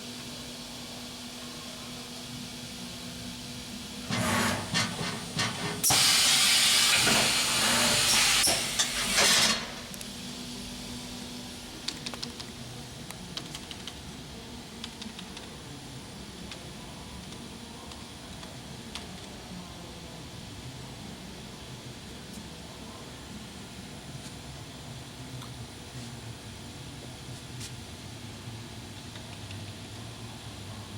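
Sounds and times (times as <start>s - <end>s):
compressed air hissing: 4.1s - 9.9s.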